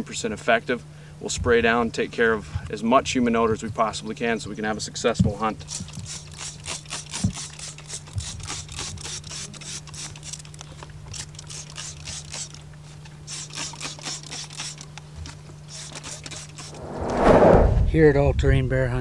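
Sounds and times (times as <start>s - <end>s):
steady low hum: 16.6s - 18.0s.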